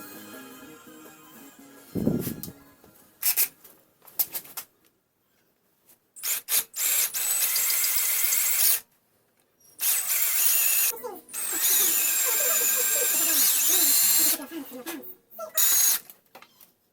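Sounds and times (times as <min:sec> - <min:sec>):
high-speed power tool whine: 0:09.8 - 0:14.4.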